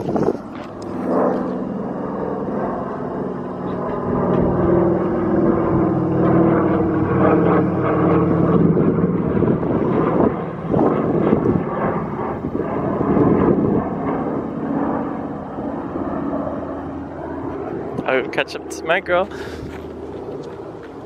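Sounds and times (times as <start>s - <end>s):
propeller airplane engine droning: 0.0s - 21.0s.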